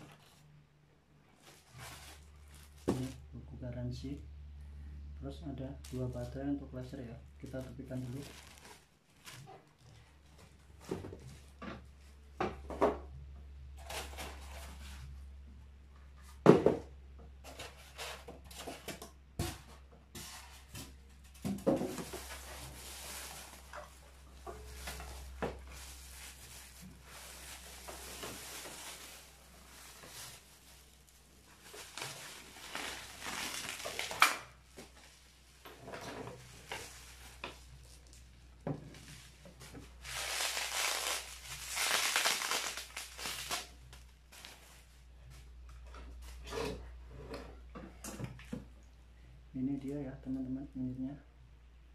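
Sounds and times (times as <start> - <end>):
low steady hum: 0.0 - 51.9
packaging rustling: 1.4 - 3.3, 7.3 - 10.4, 21.8 - 35.6, 38.9 - 44.9.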